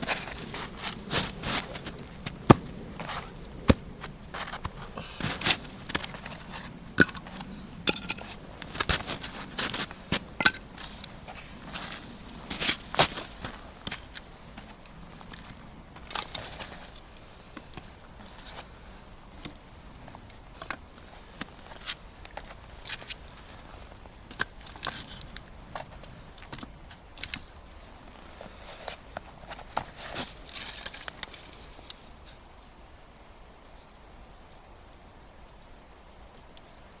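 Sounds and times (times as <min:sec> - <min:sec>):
crunching rustles: 0:00.0 - 0:18.7
dry firewood snapping: 0:00.2 - 0:06.4, 0:07.0 - 0:14.2.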